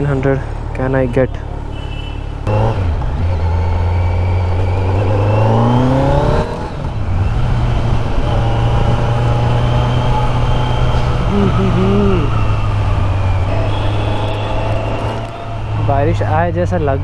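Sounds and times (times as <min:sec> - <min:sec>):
motorcycle engine accelerating: 0:02.4 - 0:15.8.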